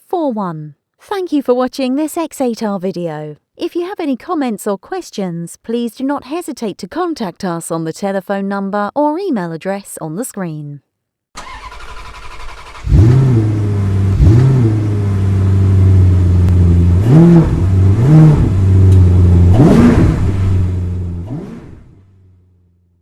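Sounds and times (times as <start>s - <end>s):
car engine revving over idle: 11.7s - 22.6s.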